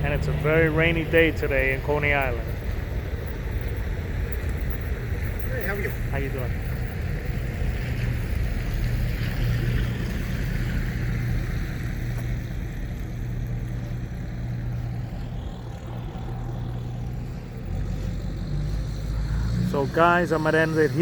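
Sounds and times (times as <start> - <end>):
vehicle low rumble: 0.0 - 21.0.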